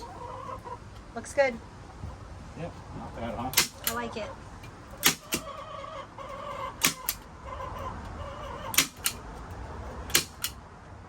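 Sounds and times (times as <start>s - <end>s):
hens clucking: 0.0s - 10.4s
sharp clicks: 3.5s - 5.5s, 6.8s - 7.3s, 8.7s - 9.3s, 10.1s - 10.6s.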